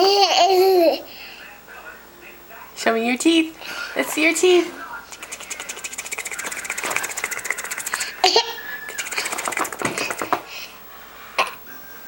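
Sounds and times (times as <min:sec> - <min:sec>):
pet's rattling vocal pulses: 0:05.1 - 0:08.2, 0:09.0 - 0:10.4.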